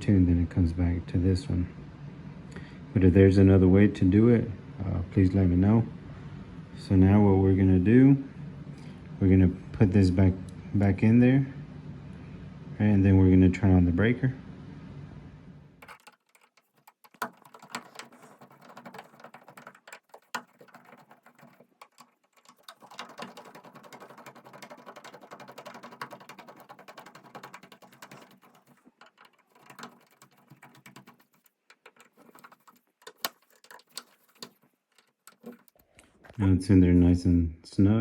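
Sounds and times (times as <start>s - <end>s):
fine rapid ticking: 15.8s - 35.8s.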